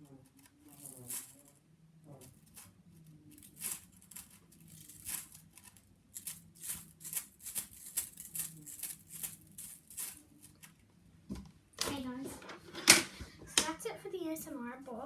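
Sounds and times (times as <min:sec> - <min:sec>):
fidget toys clicking and rustling: 0:00.3 - 0:10.8.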